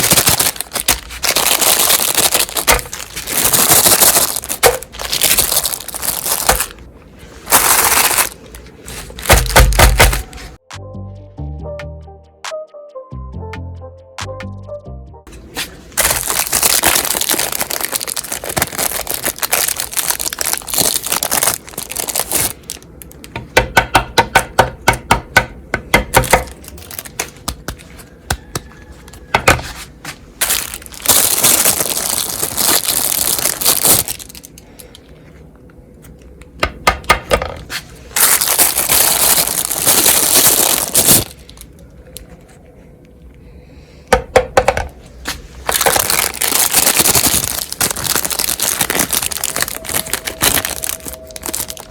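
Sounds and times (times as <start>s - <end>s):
meat grinder crunching ice cream bars: 9.1s - 10.4s, 16.0s - 23.3s, 45.7s - 51.9s.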